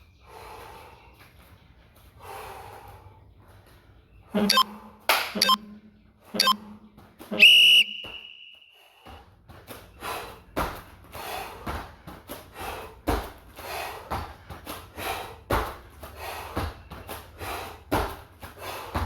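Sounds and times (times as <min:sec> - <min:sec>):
heavy rhythmic breathing: 0:00.0 - 0:19.0
interval timer beep: 0:04.4 - 0:04.7, 0:05.4 - 0:05.8, 0:06.4 - 0:06.6.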